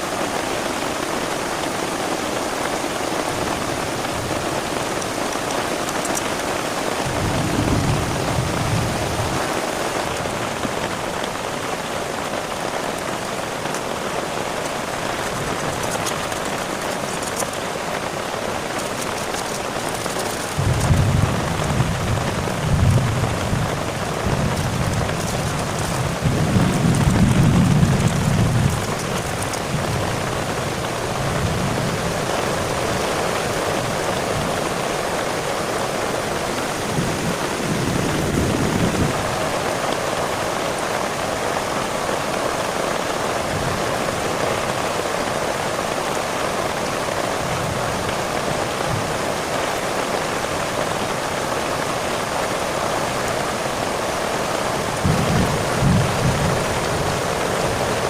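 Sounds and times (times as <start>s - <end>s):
heavy rain: 0.0s - 58.0s
thunder rumbling: 7.0s - 11.6s, 18.9s - 32.9s, 54.8s - 58.0s.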